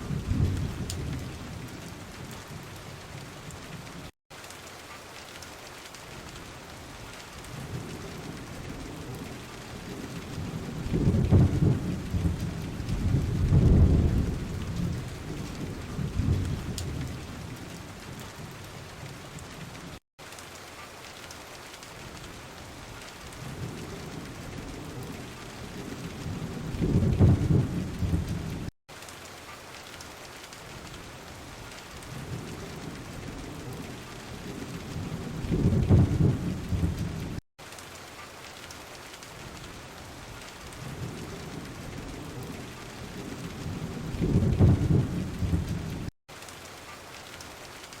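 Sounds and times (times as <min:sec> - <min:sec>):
low rolls of thunder: 0:00.0 - 0:04.1, 0:07.5 - 0:19.8, 0:23.3 - 0:28.7, 0:32.0 - 0:37.4, 0:40.7 - 0:46.1
steady rain falling: 0:00.0 - 0:48.0.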